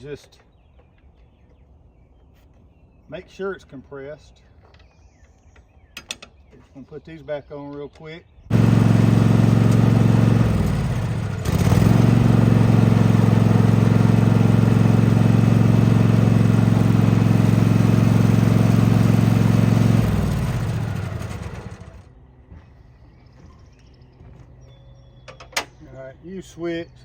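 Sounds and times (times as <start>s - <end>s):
riding mower engine running: 8.5s - 22.2s.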